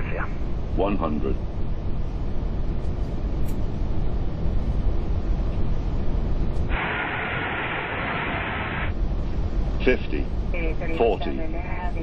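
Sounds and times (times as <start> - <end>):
engine and airflow rumble: 0.0 - 12.0
thin radio hiss: 6.4 - 12.0.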